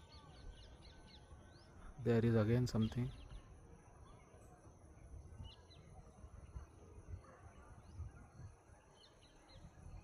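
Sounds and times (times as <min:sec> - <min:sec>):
distant small birds chirping: 0:00.0 - 0:10.0.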